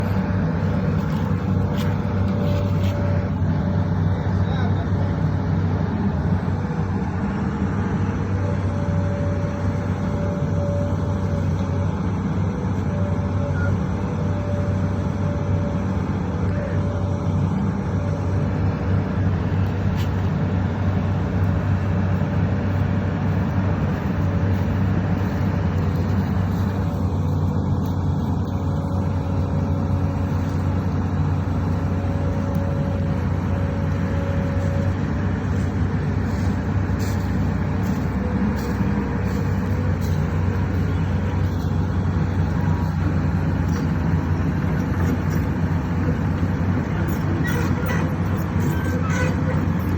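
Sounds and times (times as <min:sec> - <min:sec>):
excavator engine humming: 0:00.0 - 0:49.9
thin steady whine: 0:00.0 - 0:49.9.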